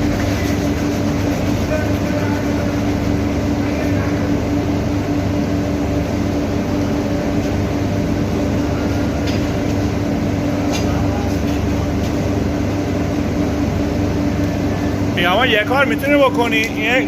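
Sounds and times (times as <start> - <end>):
industrial drone and hum: 0.0 - 17.0.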